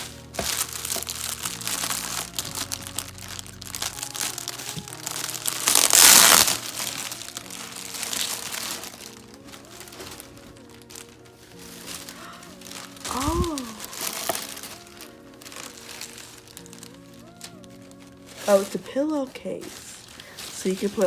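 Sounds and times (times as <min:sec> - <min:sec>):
packaging crinkling and rustling: 0:00.0 - 0:21.0.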